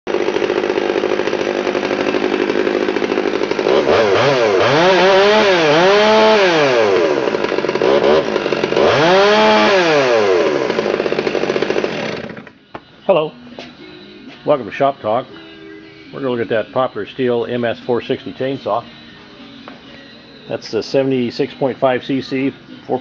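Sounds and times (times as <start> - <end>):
chainsaw engine revving: 0.1 - 12.6.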